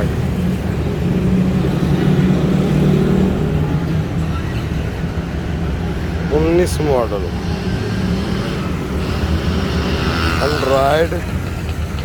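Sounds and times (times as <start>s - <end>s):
street noise: 0.0s - 12.0s
vehicle engine running: 0.0s - 12.0s.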